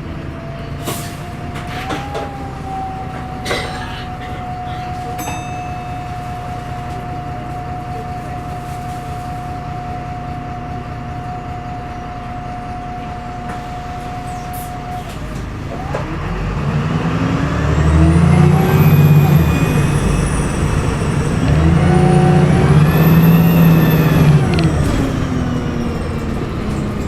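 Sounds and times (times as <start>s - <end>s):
diesel bus engine idling: 0.0s - 27.0s
engine revving: 15.2s - 27.0s.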